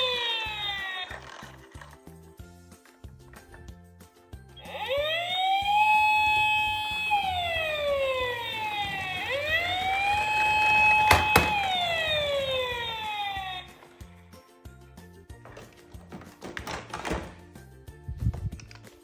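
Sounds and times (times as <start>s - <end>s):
toy electronic siren wailing: 0.0s - 1.8s, 4.6s - 14.2s.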